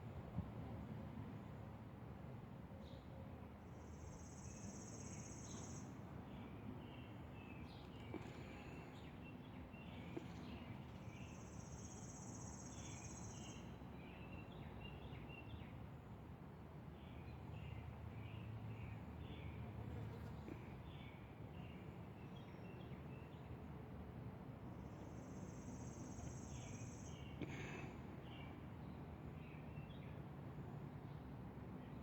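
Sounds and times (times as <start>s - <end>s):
songbirds chirping: 4.5s - 15.9s.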